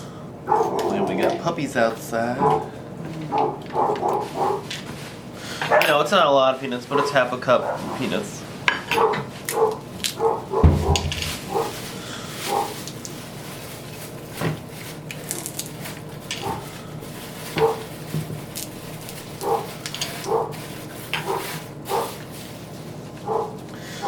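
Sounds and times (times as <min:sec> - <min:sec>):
puppies barking: 0:00.4 - 0:04.8, 0:05.6 - 0:06.1, 0:06.9 - 0:12.9, 0:16.2 - 0:18.1, 0:19.3 - 0:22.2, 0:23.2 - 0:24.0.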